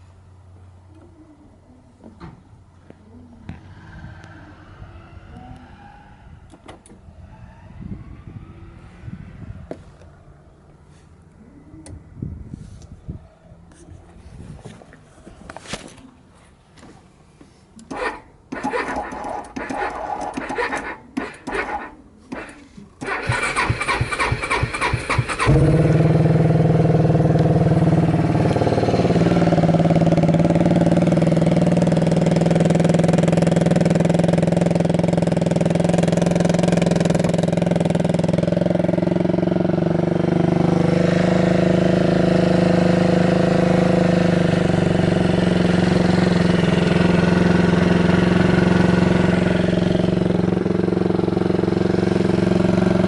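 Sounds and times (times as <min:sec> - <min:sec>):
scooter starter cranking: 0:17.8 - 0:26.7
scooter engine idling: 0:17.8 - 0:53.0.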